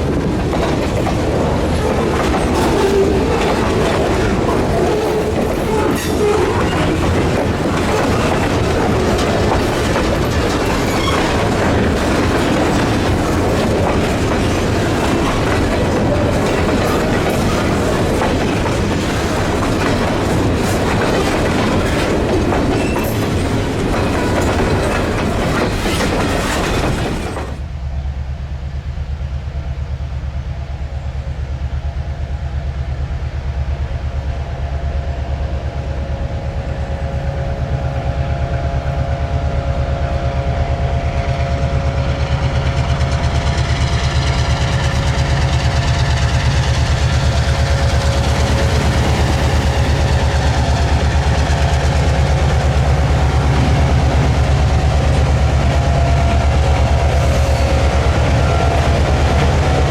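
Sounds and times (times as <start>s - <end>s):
freight cars clickety-clack: 0.0s - 27.7s, 40.4s - 59.9s
diesel locomotive engine drone: 0.0s - 59.9s.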